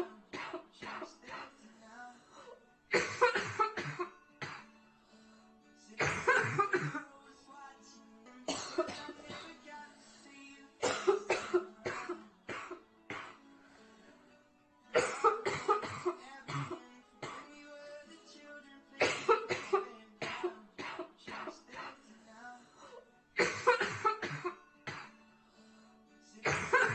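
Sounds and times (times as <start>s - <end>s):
faint music: 0.0s - 26.9s
girl coughing harshly: 2.9s - 4.7s, 6.0s - 7.0s, 8.5s - 9.5s, 10.8s - 13.4s, 15.0s - 17.5s, 19.0s - 22.0s, 23.4s - 25.1s, 26.4s - 26.9s.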